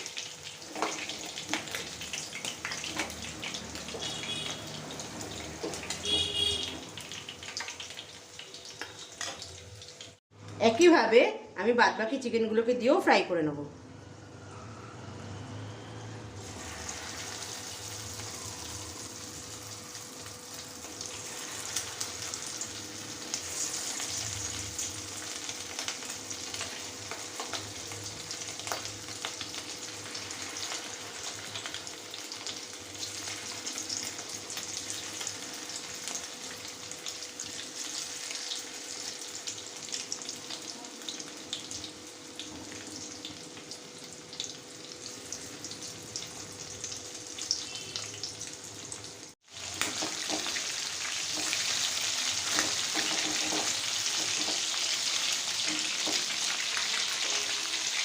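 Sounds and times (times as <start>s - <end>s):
chicken frying in hot oil: 0.0s - 10.2s, 16.4s - 58.0s.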